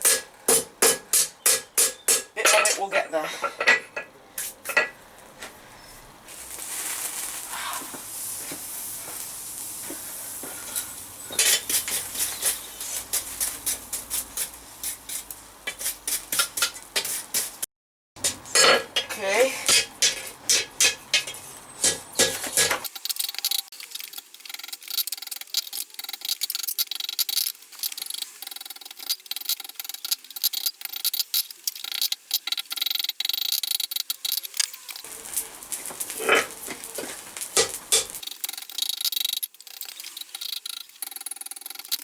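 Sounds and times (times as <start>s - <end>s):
hammer striking steel on anvil: 0.0s - 3.9s.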